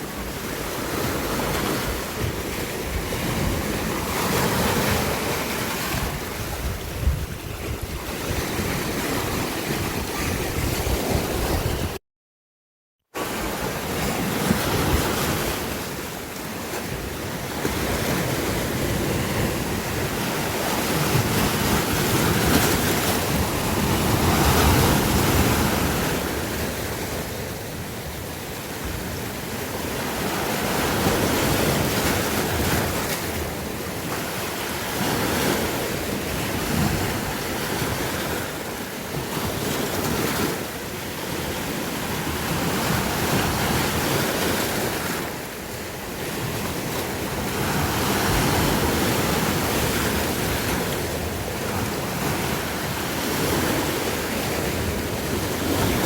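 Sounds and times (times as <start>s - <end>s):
sea waves surging: 0.0s - 12.0s, 13.2s - 56.0s
wind buffeting microphone: 2.2s - 12.0s.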